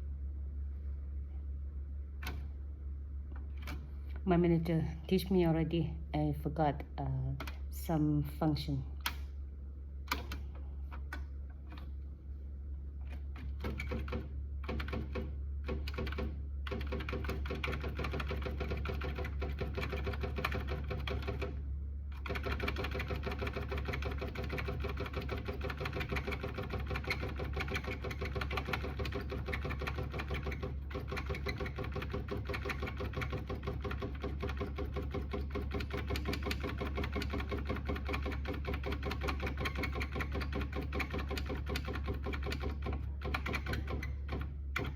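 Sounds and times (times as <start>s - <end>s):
typewriter motor hum: 13.1s - 44.9s
electric typewriter striking: 22.2s - 44.9s.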